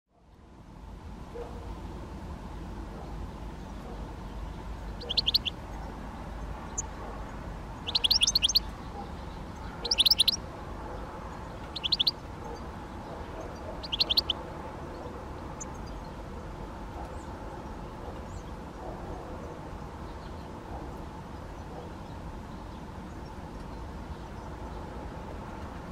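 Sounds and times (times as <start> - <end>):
woodpecker calls: 4.8 - 6.0, 7.8 - 10.4, 11.5 - 16.1.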